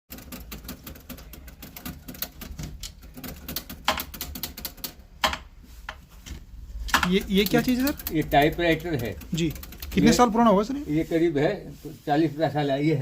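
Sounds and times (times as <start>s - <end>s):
typewriter key strikes: 0.1s - 5.4s.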